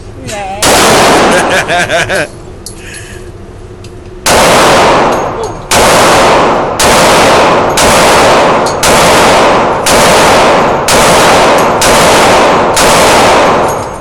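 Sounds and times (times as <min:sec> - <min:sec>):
pistol shots with ringing tail: 0:00.6 - 0:01.9, 0:04.2 - 0:14.0.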